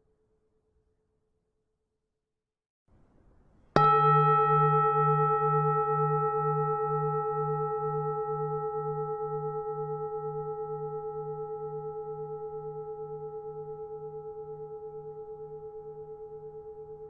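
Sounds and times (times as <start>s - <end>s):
temple bell ringing: 3.8s - 11.1s.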